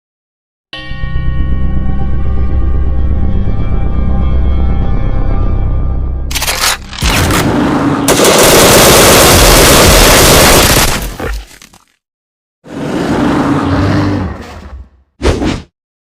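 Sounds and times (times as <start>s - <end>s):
machine-gun fire: 7.0s - 11.2s.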